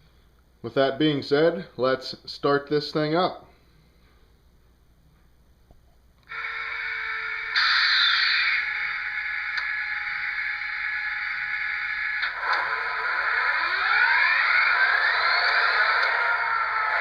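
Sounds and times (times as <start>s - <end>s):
steady hum: 0.0s - 17.0s
model diesel locomotive engine: 6.3s - 17.0s.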